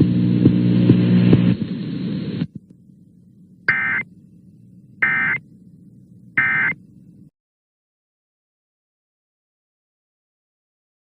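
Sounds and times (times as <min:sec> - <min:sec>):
steady low hum: 0:00.0 - 0:07.3.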